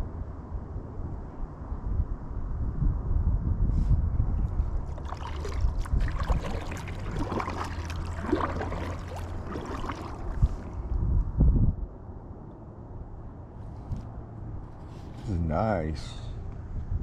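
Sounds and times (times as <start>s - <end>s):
steady low rumble: 0.0s - 17.0s
water splashing and trickling: 4.4s - 11.0s.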